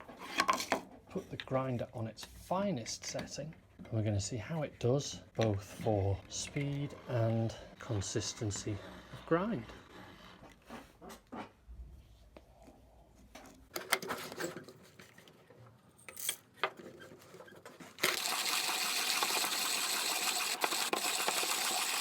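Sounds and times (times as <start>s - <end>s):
hand coffee grinder grinding: 17.2s - 22.0s.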